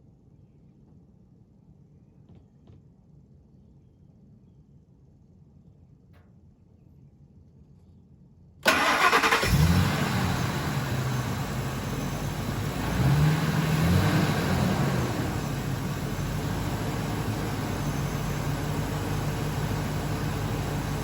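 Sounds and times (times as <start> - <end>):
engine starter cranking: 8.6 - 12.7
engine idling: 8.6 - 21.0.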